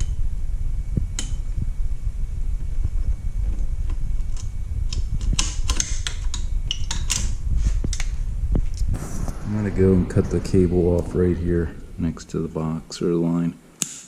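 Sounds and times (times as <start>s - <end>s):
steady low rumble: 7.3s - 13.7s.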